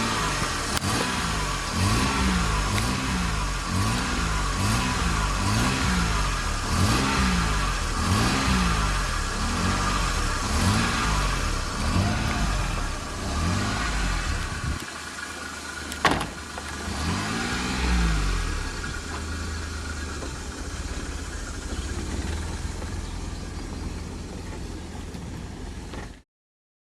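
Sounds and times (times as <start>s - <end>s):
car engine revving: 0.0s - 26.2s.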